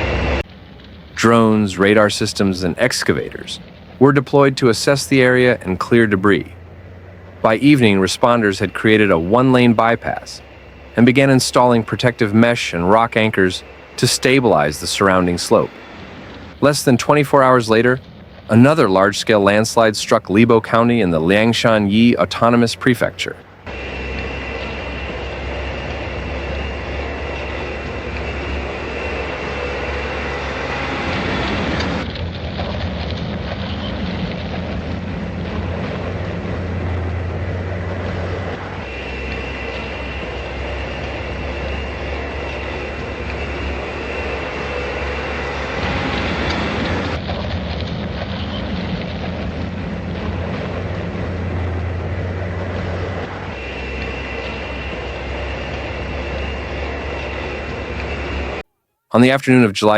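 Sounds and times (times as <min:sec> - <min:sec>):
steady rumbling noise: 0:00.0 - 0:59.9
faint high steady tone: 0:01.2 - 0:31.0, 0:38.2 - 0:45.9, 0:53.4 - 0:59.9.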